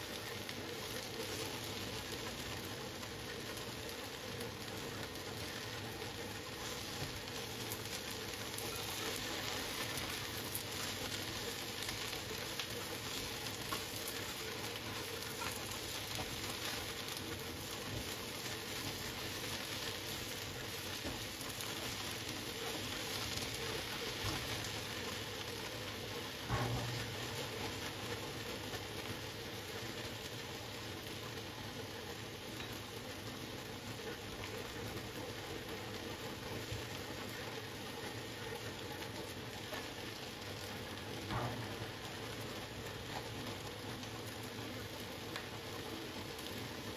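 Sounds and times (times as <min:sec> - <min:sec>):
food sizzling in a pan: 0:00.0 - 0:46.9
knock: 0:26.5 - 0:27.0.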